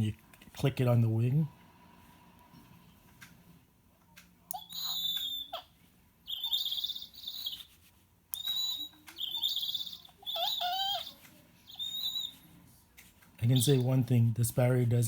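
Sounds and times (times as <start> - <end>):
toy owl screechy call: 4.5 - 7.8, 8.4 - 12.4, 13.4 - 13.9.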